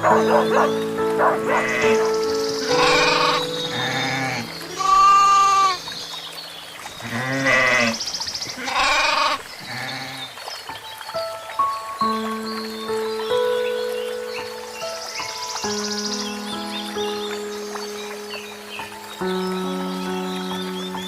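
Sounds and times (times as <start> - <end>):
livestock bleating: 2.7 - 5.8.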